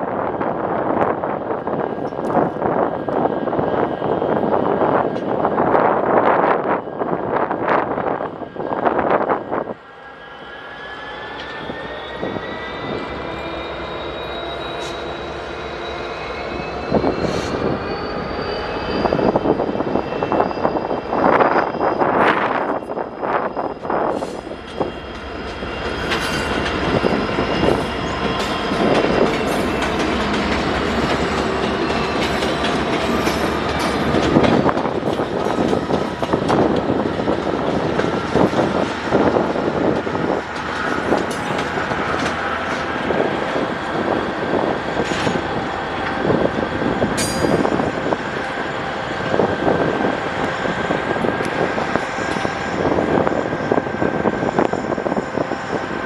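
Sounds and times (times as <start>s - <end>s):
high-pitched wheel squeal: 9.8s - 25.0s
train wheels clattering: 24.1s - 43.8s, 47.0s - 48.2s.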